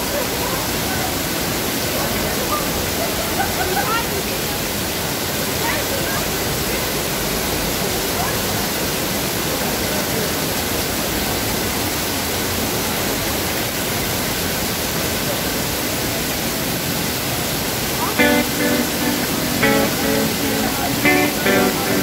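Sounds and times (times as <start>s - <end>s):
waterfall rushing: 16.8s - 22.0s
acoustic guitar chord strummed: 18.1s - 22.0s.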